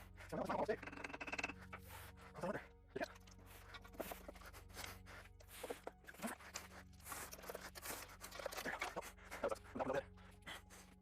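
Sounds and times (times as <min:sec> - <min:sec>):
engine parts clicking and scraping: 0:03.0 - 0:10.0.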